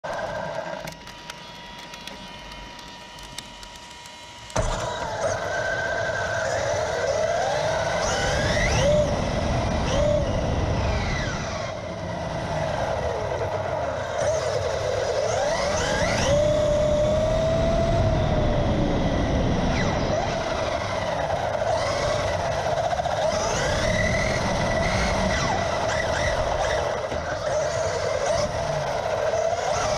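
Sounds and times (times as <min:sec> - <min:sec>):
electric motor whining: 0:00.0 - 0:29.9
wind noise: 0:15.3 - 0:29.9.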